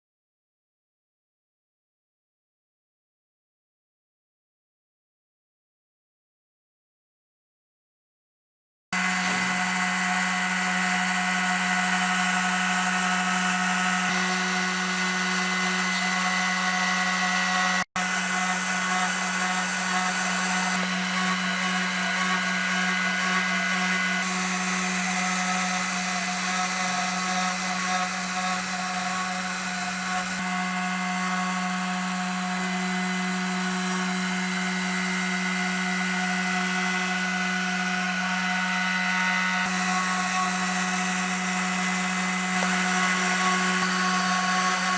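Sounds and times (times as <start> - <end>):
router spindle whining: 9.0 - 44.9.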